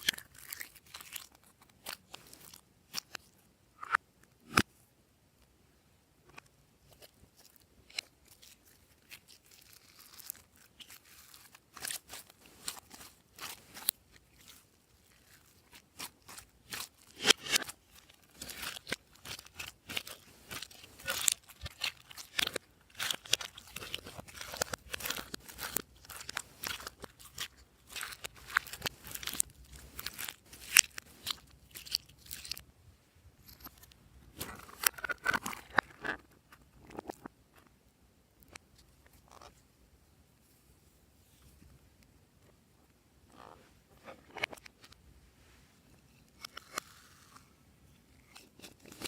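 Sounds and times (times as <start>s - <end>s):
slime squished by hand: 8.3s - 32.5s.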